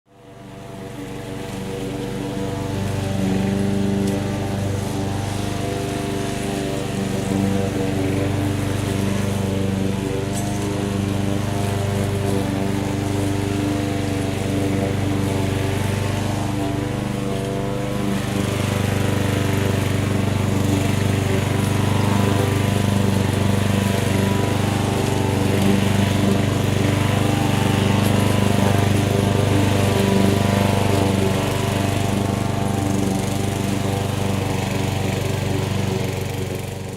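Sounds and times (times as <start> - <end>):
lawn mower running: 0.1 - 36.9.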